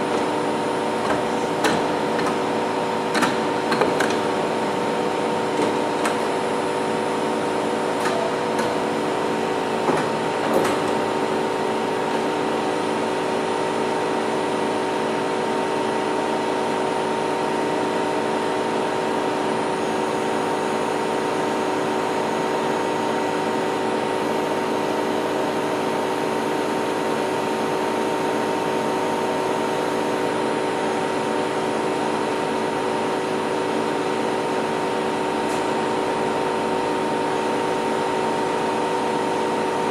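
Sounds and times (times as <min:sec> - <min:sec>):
milling machine humming: 0:00.0 - 0:16.7.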